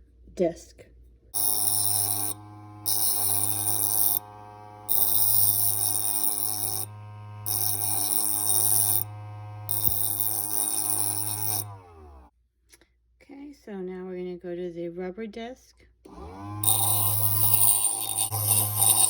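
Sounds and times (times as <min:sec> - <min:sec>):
honing machine motor humming: 0:01.4 - 0:12.3, 0:16.1 - 0:19.0
metal grinding on spinning disc: 0:01.4 - 0:12.3, 0:16.6 - 0:19.0.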